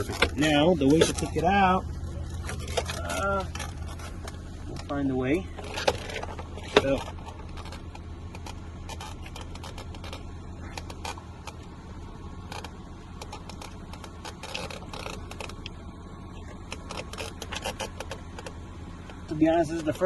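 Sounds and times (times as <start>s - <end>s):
clicks and rattles of plastic parts: 0.0s - 1.5s, 2.3s - 4.9s, 5.5s - 11.6s, 16.4s - 20.0s
steady low hum: 0.0s - 20.0s.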